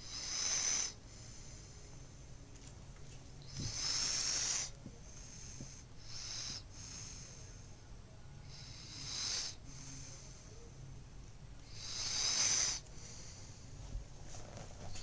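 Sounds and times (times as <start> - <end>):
person snoring: 0.0 - 1.0, 3.5 - 7.6, 8.5 - 10.3, 11.6 - 13.2.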